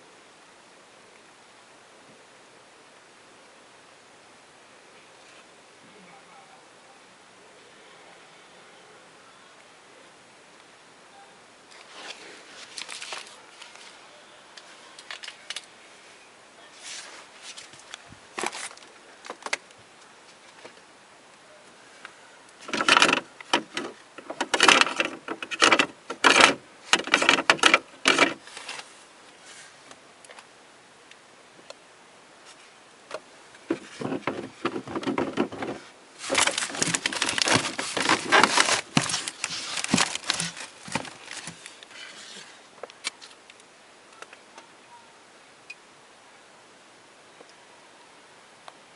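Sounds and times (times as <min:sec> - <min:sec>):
refrigerator hissing and crackling: 0:16.8 - 0:19.6, 0:22.6 - 0:30.4, 0:33.6 - 0:43.3.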